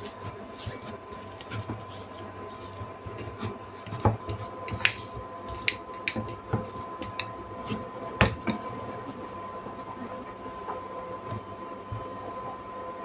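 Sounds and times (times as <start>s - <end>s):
dishes and utensils clinking: 3.1s - 6.4s.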